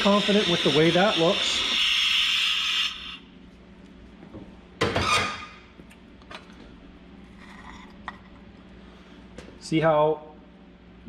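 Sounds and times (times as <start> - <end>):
torch flame hissing: 0.0 - 3.2.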